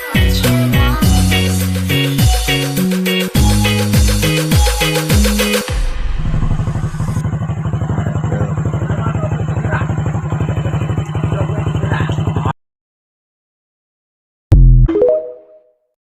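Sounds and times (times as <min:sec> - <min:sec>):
small engine idling: 0:06.2 - 0:12.5.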